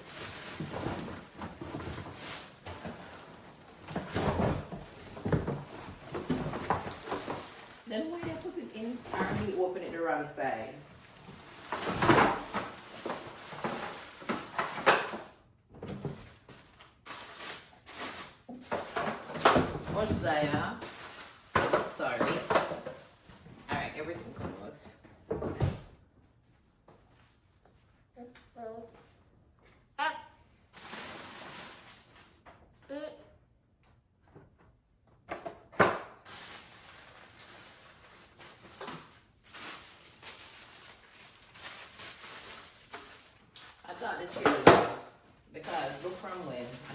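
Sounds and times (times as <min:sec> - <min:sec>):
cardboard packaging rustling: 0:00.0 - 0:23.7, 0:30.7 - 0:32.5, 0:36.2 - 0:46.9.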